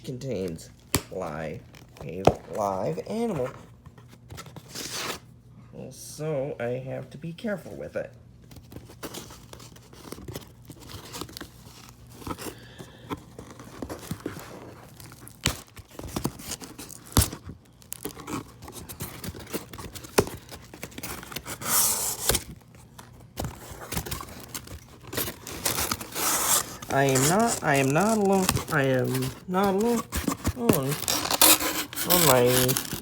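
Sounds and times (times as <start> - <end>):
cardboard and packing rustling: 0.2 - 5.3, 7.5 - 33.0
tape tearing: 8.6 - 33.0.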